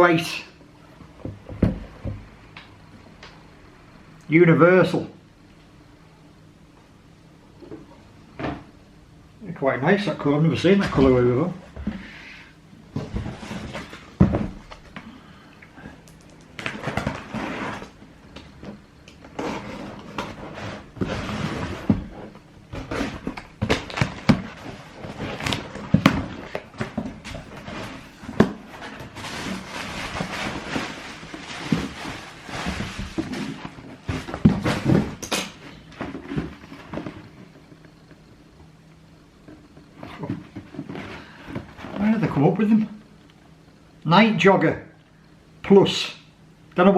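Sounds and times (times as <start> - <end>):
knocks and thuds: 12.9 - 14.8
cardboard box and paper rustling: 22.8 - 35.1.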